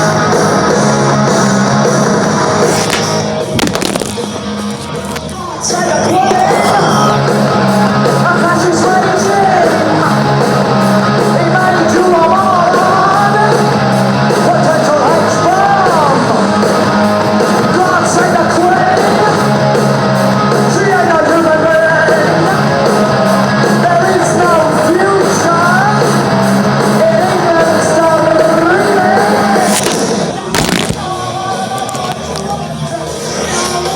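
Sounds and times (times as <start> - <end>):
rock music with singer: 0.0 - 33.9.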